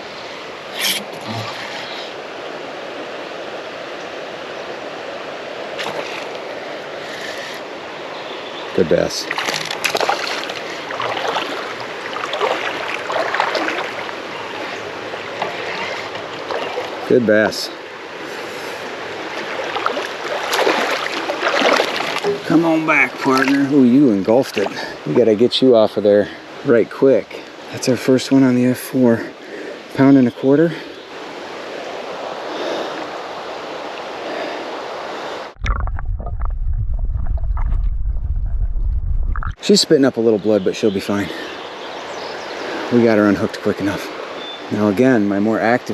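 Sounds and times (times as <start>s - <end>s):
creek water running: 0.0s - 38.4s, 39.3s - 45.9s
brief water splashes: 9.3s - 14.1s, 19.4s - 22.4s
low muffled rumble: 35.6s - 39.6s.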